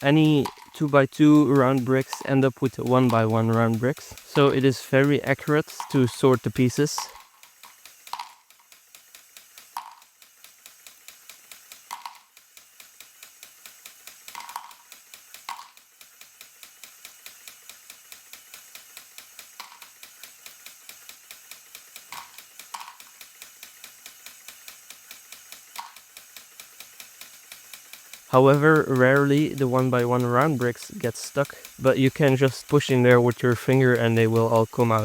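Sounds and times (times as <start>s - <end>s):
plastic mechanism clicking: 0.0s - 16.1s, 22.0s - 23.9s.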